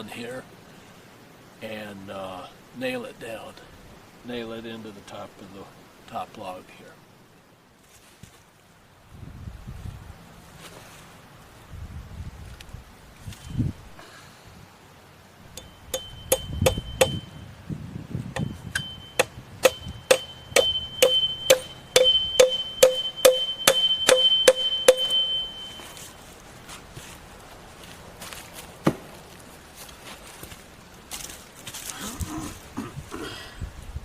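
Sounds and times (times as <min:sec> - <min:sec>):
hammer striking nail: 0:15.5 - 0:17.2, 0:18.8 - 0:25.2.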